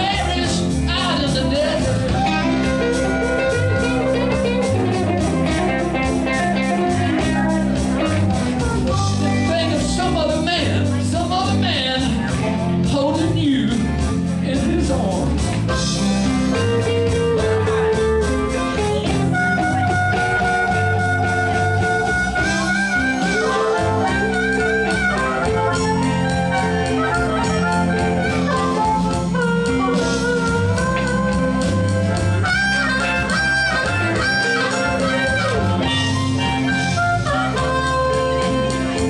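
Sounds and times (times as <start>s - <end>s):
blues guitar over a beat: 0.0s - 39.0s
wavering melody line: 16.0s - 39.0s.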